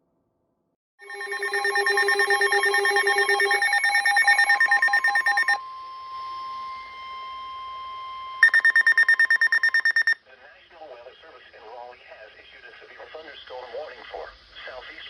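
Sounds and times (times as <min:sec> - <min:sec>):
rapid multi-pitch alarm beeping: 0:01.0 - 0:10.2
steady alarm tone: 0:01.0 - 0:10.2.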